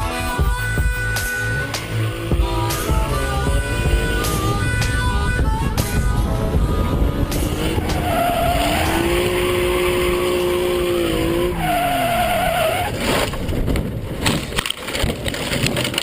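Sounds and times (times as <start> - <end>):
vehicle engine revving: 0.0 - 13.6
tires skidding and squealing: 1.0 - 13.6.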